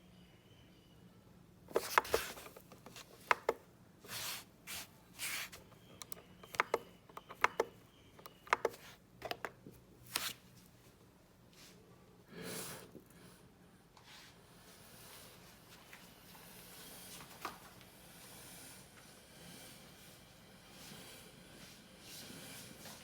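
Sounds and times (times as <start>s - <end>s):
sharp handling clicks and taps: 1.7s - 3.6s, 5.5s - 9.6s
short rustling hisses: 4.1s - 5.7s.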